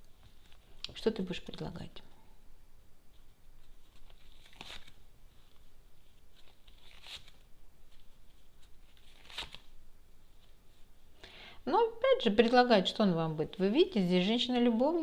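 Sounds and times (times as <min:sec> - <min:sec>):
cards swishing: 0:03.6 - 0:05.6, 0:06.2 - 0:09.7.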